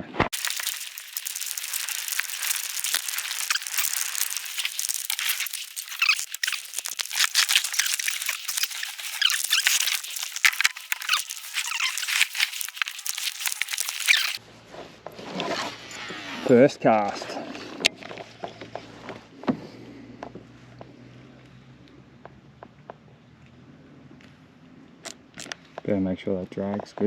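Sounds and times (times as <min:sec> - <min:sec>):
high-pitched wildlife chirps: 0:00.4 - 0:14.4.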